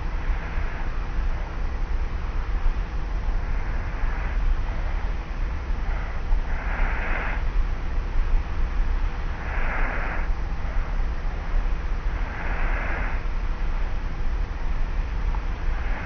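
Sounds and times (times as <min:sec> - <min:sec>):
tape recorder hum and hiss: 0:00.0 - 0:16.0
soft breathy snoring: 0:03.3 - 0:05.2, 0:05.8 - 0:07.6, 0:09.2 - 0:13.4, 0:15.6 - 0:16.0.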